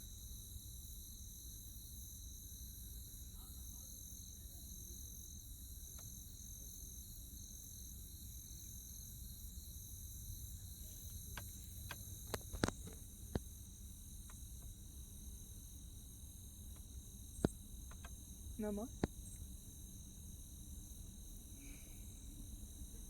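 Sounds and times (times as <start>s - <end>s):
night insects trilling: 0.0s - 23.0s
sharp clicks: 16.7s - 18.2s.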